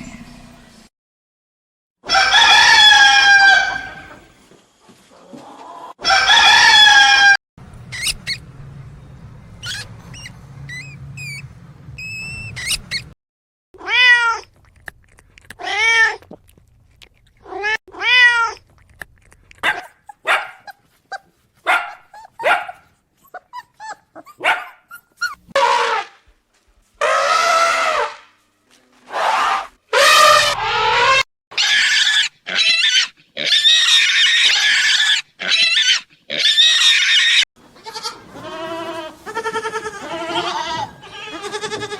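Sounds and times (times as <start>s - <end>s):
cat meowing: 13.8s - 14.5s, 17.5s - 18.6s.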